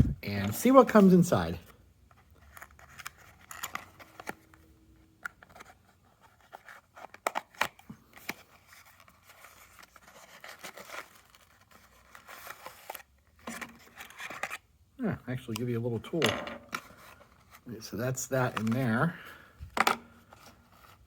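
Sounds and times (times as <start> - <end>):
packaging rustling: 5.3 - 14.7.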